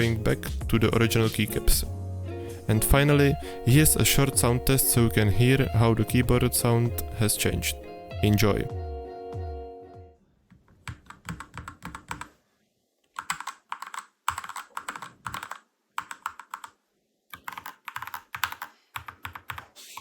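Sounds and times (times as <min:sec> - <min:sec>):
mechanical keyboard typing: 0:10.7 - 0:12.3, 0:13.2 - 0:20.0.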